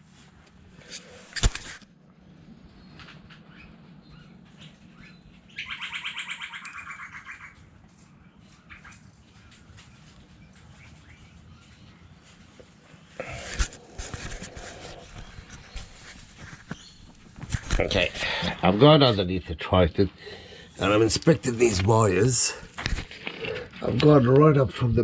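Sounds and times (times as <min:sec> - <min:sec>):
clicks and rustles: 0:00.9 - 0:01.9, 0:12.6 - 0:18.6, 0:20.8 - 0:24.5
faint steady hum: 0:06.2 - 0:25.0.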